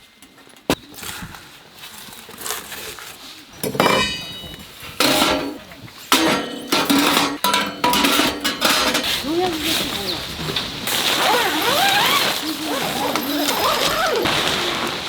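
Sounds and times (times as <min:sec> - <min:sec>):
dishes and cutlery clattering: 0:03.5 - 0:09.9.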